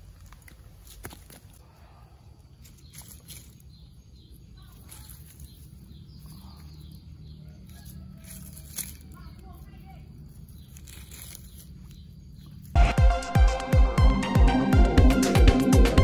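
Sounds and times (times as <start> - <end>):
bird chirping: 1.9 - 13.7.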